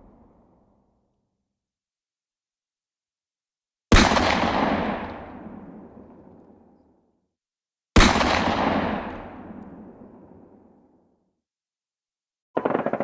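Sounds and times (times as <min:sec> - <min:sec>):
gunshots with rolling echo: 0:03.9 - 0:07.1, 0:08.0 - 0:11.2, 0:12.6 - 0:13.0.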